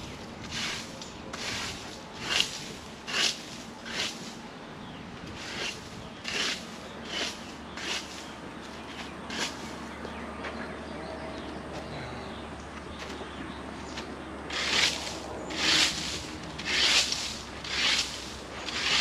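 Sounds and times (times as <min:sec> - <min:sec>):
rhythmic scraping strokes: 0:00.0 - 0:04.4, 0:05.4 - 0:09.8, 0:14.5 - 0:19.0.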